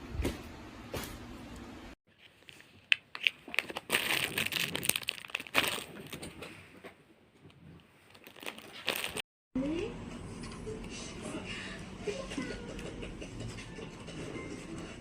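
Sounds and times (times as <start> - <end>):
plastic packaging crinkling: 2.1 - 6.4, 8.0 - 9.2.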